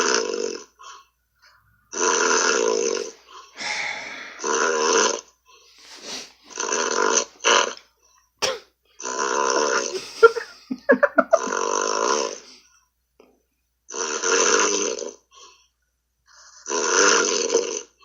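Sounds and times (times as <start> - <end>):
man snoring loudly: 0.0 - 0.8, 1.9 - 5.2, 9.0 - 10.3, 11.3 - 12.5, 13.9 - 15.3, 16.6 - 18.0.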